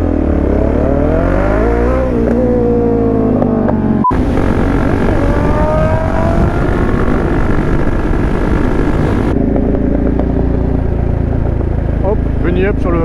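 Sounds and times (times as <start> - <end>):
motorcycle engine accelerating: 0.0 - 13.0
loud rushing noise: 4.1 - 9.4.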